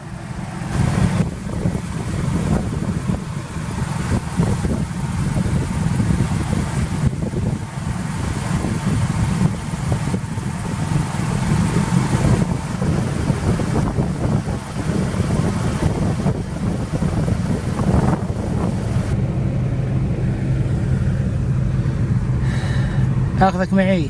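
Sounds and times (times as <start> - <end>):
road noise: 0.0 - 24.0
vehicle engine rumble: 0.0 - 24.0
wind: 0.0 - 24.0.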